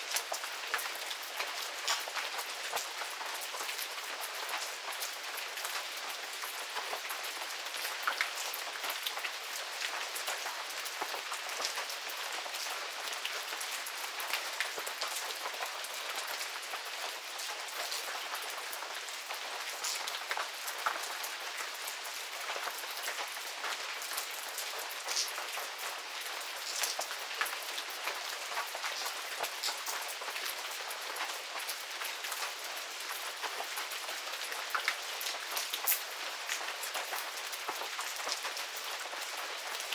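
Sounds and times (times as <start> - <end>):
medium rain pattering: 0.0 - 39.9.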